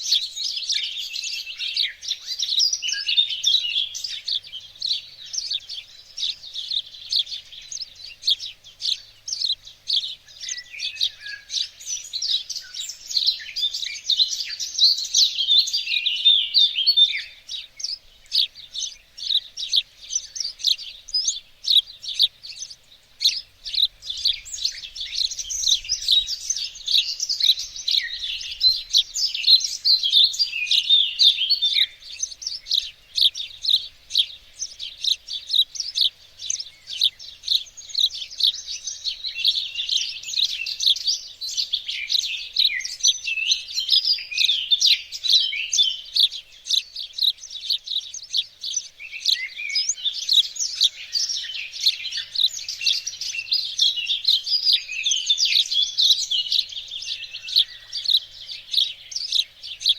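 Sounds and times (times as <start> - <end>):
songbirds chirping and singing: 0.0 - 59.9.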